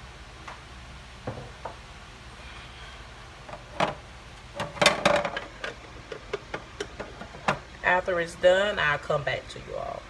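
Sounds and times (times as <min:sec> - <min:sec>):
kitchen items clattering: 0:03.5 - 0:07.7.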